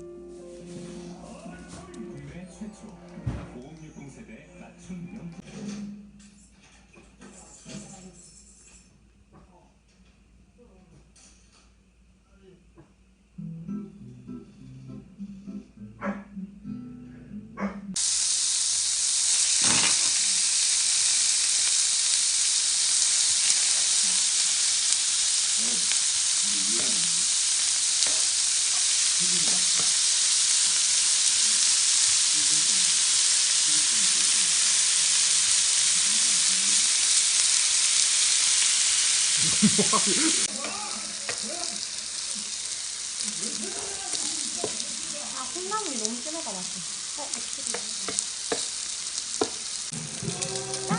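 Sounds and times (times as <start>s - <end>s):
food sizzling in hot pan: 17.9s - 50.9s.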